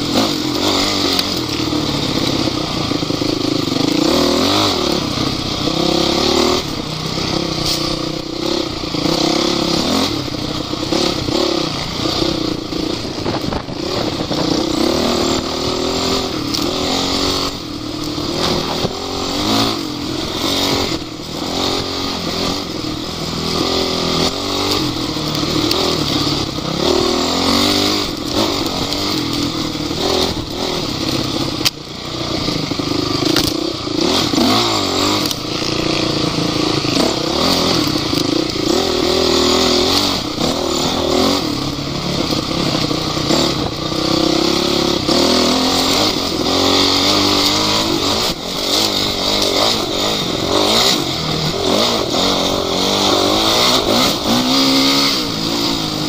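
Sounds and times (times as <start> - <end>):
off-road vehicle engine revving: 0.0 - 56.0.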